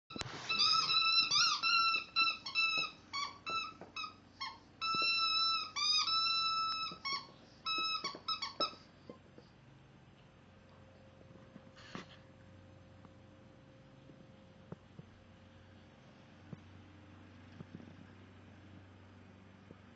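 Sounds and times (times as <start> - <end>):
squeaky dog toy squeaking: 0.1 - 8.9.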